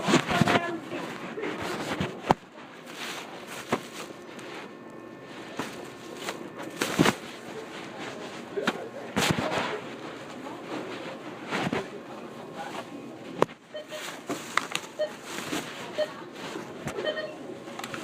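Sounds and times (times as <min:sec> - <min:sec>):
background hubbub: 0:00.0 - 0:18.0.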